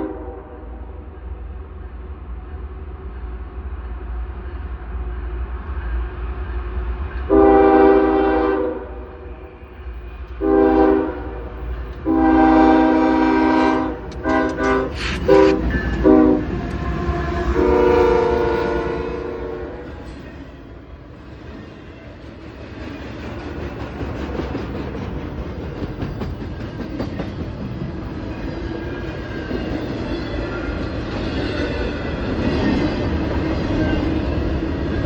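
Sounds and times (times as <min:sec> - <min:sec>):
locomotive air horn blasts: 0:00.0 - 0:00.8, 0:07.3 - 0:09.2, 0:10.4 - 0:20.1
train rumble: 0:00.0 - 0:35.0.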